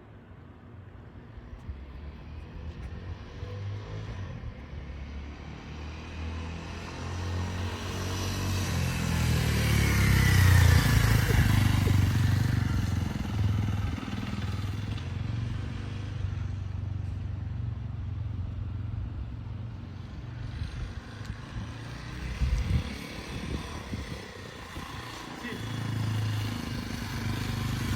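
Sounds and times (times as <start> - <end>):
motorcycle engine running: 7.4 - 27.9.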